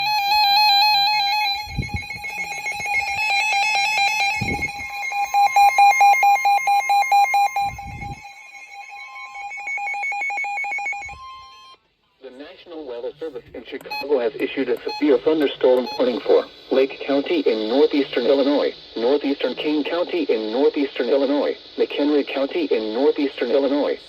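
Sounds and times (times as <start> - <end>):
rapid pulsing beeps: 0.0 - 11.8, 13.9 - 16.5
steady high electronic tone: 0.0 - 11.8
weather radio alert alarms: 0.0 - 11.8, 13.9 - 16.6.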